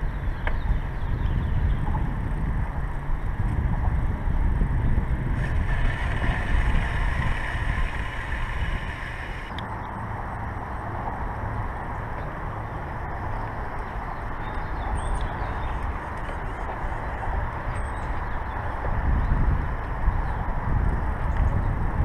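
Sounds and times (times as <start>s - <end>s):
wind buffeting microphone: 0.0s - 22.0s
higher steady hum: 5.2s - 14.5s.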